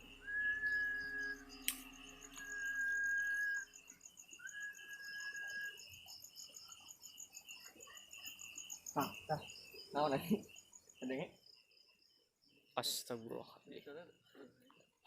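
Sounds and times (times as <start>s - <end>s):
high steady whistle tone: 0.0s - 6.2s
crickets chirping: 0.0s - 15.0s.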